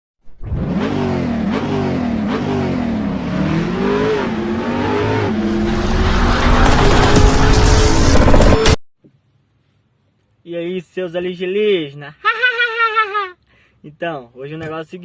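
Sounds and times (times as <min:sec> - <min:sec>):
car engine revving: 0:00.4 - 0:08.8.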